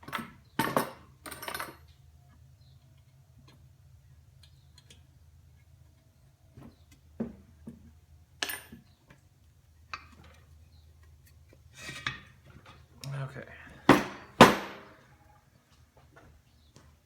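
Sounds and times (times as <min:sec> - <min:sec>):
loud knock: 0:13.9 - 0:15.0.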